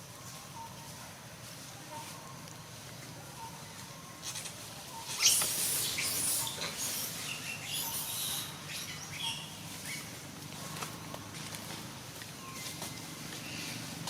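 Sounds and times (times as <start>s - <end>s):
baby monkey squeaking: 4.2s - 10.1s.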